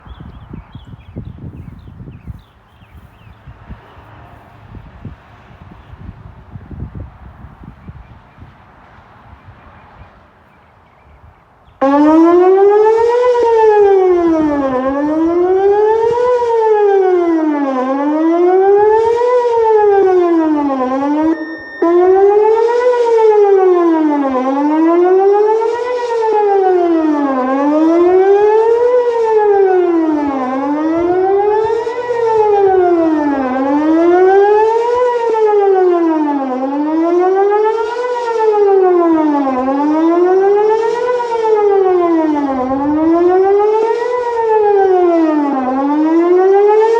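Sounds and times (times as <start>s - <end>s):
warning siren wailing: 11.8s - 46.9s
short steady beep: 21.3s - 22.4s.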